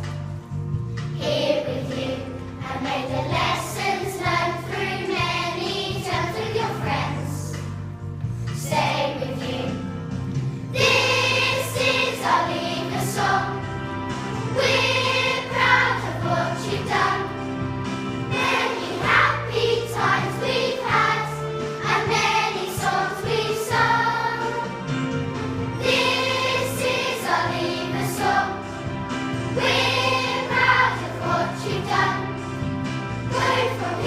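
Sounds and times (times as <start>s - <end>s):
musical accompaniment: 0.0s - 34.0s
children singing: 10.8s - 13.6s, 14.6s - 17.3s, 18.3s - 24.8s, 25.8s - 28.7s, 29.6s - 32.4s, 33.3s - 34.0s.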